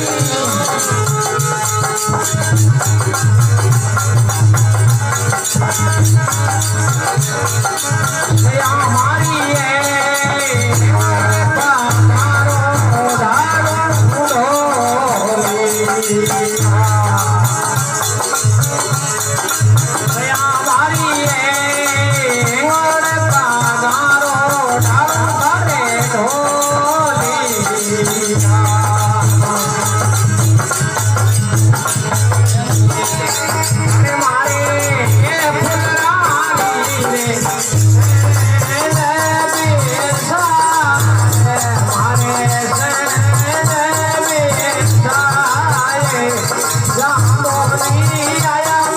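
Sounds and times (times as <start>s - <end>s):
gliding devotional melody: 0.0s - 2.3s
rattling hand percussion: 0.0s - 48.9s
steady drum beat: 0.0s - 48.9s.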